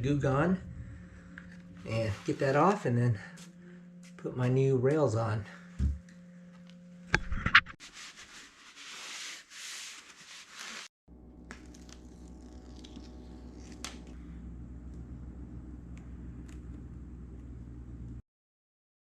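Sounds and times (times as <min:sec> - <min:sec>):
steady low hum: 0:00.0 - 0:07.8, 0:11.1 - 0:18.2
scratchy rubbing with a rag: 0:07.8 - 0:10.9.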